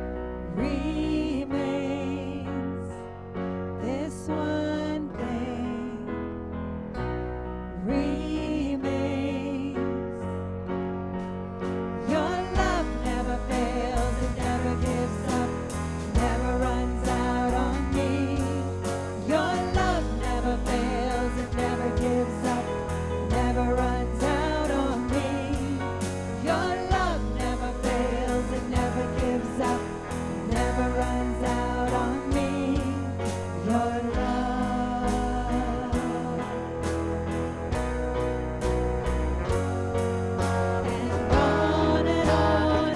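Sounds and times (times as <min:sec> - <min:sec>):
guitar: 0:00.0 - 0:42.9
person singing worship song: 0:00.4 - 0:03.2, 0:07.8 - 0:10.3, 0:12.0 - 0:37.5, 0:40.7 - 0:42.9.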